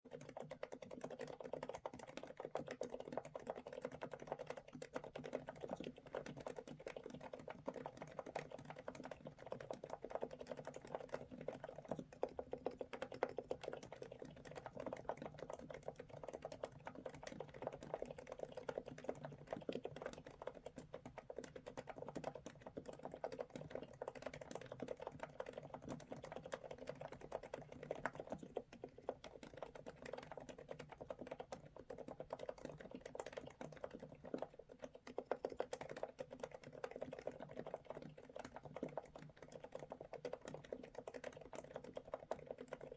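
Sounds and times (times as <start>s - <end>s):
keyboard typing: 0.1s - 42.9s.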